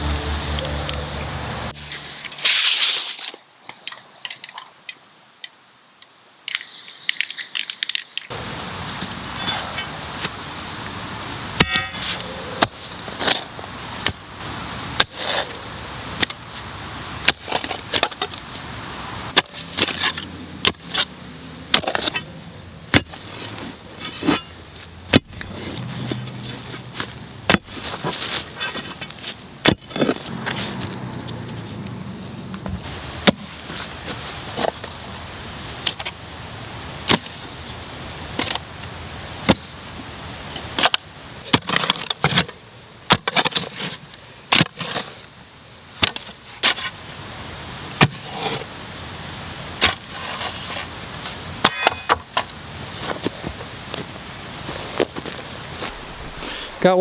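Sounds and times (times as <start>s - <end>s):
digging tool striking hard ground: 11.6s - 13.4s, 19.3s - 21.1s, 21.7s - 22.3s, 22.9s - 26.2s, 27.0s - 31.6s.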